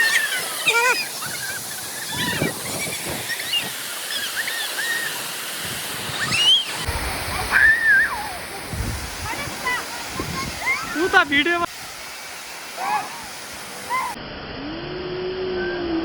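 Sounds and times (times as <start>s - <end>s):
high-pitched calls or shouts: 0.0s - 5.2s, 6.2s - 8.6s, 12.7s - 14.2s
waterfall rushing: 0.0s - 14.2s.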